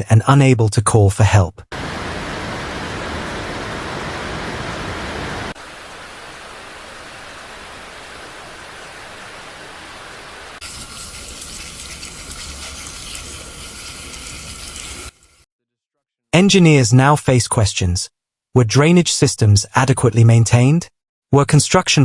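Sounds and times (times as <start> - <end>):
water rushing: 1.7 - 15.3.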